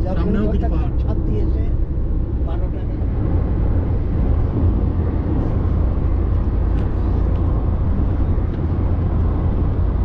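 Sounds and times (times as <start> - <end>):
car engine and tyre rumble: 0.0 - 10.0.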